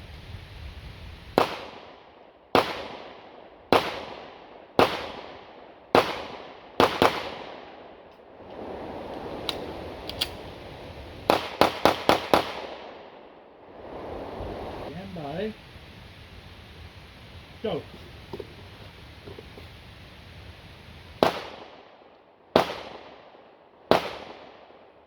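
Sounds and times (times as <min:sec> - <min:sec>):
pistol shots with echo: 0:01.4 - 0:02.0, 0:02.6 - 0:07.8, 0:11.3 - 0:13.2, 0:21.2 - 0:21.8, 0:22.5 - 0:23.2, 0:23.9 - 0:24.8
magazine change clicks: 0:09.5 - 0:10.4.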